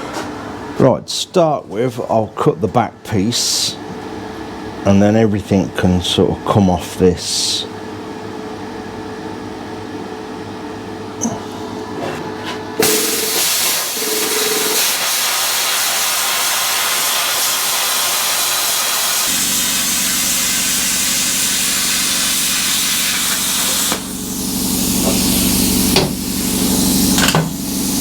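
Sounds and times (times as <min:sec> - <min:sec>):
low mechanical hum: 0:00.0 - 0:12.8, 0:19.3 - 0:28.0
plasma cutter hissing: 0:12.8 - 0:28.0.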